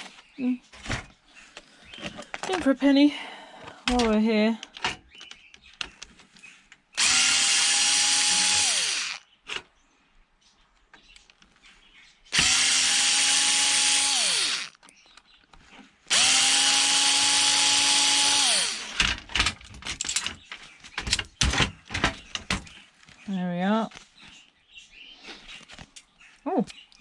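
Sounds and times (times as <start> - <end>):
parts rattling and clicking: 3.6 - 7.2, 12.4 - 22.8
electric drill whining: 7.0 - 9.2, 12.3 - 14.8, 16.1 - 19.2.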